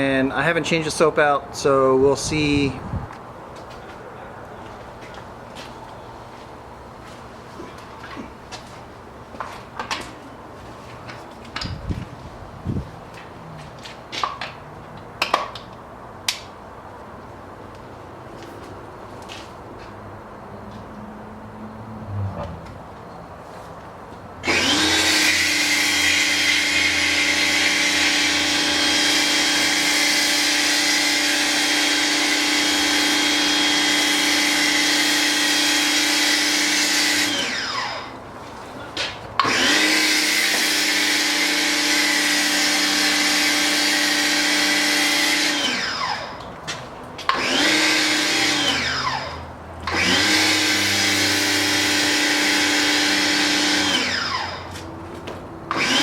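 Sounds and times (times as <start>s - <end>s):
pressure washer motor whine: 24.4s - 38.2s, 39.4s - 46.5s, 47.3s - 54.8s, 55.7s - 56.0s.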